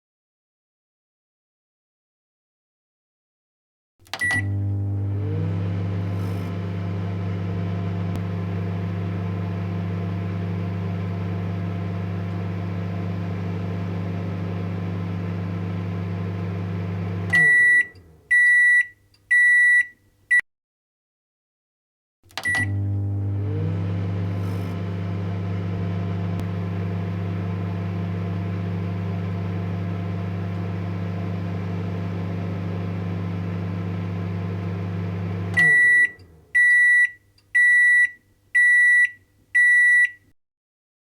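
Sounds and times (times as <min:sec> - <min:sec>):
microwave beeps: 0:04.2 - 0:05.8, 0:06.4 - 0:20.4, 0:22.4 - 0:40.3
microwave humming: 0:04.2 - 0:18.6, 0:22.4 - 0:36.9.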